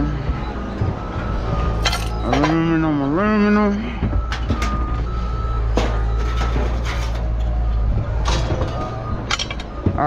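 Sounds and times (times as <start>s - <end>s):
low engine rumble: 0.0s - 10.0s
scrap metal clanking onto pile: 6.2s - 7.4s.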